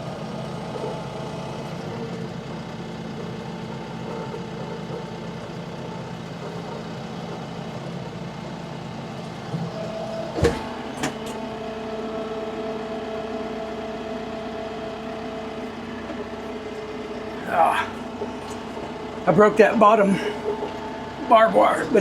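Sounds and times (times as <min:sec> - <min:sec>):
tractor engine running: 0:00.0 - 0:22.0
steady higher whine: 0:15.4 - 0:22.0.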